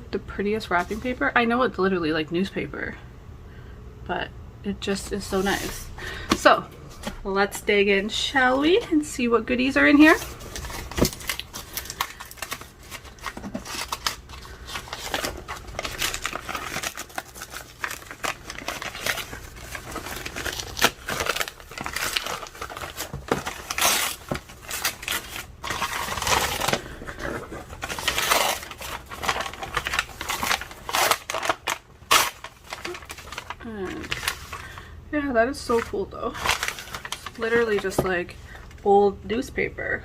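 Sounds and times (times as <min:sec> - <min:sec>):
paper tearing and crumpling: 0:10.0 - 0:34.8, 0:35.7 - 0:37.9.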